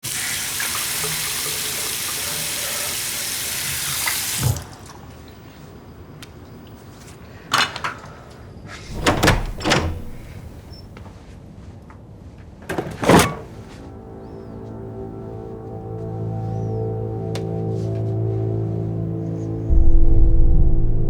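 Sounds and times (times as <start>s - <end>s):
water running in a stream: 0.0s - 5.4s.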